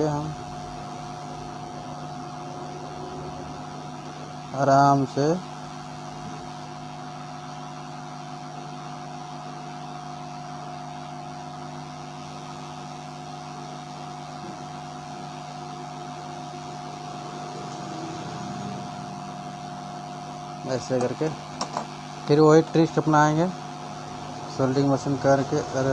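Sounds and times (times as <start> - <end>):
electrical hum: 0.0 - 25.9.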